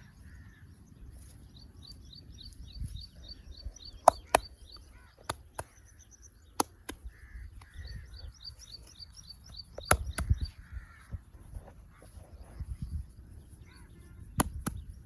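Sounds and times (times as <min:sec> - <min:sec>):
small birds chirping: 0:00.0 - 0:15.0
sharp massage smacks: 0:04.0 - 0:04.6, 0:05.2 - 0:05.8, 0:06.6 - 0:07.7, 0:09.8 - 0:10.4, 0:14.4 - 0:15.0.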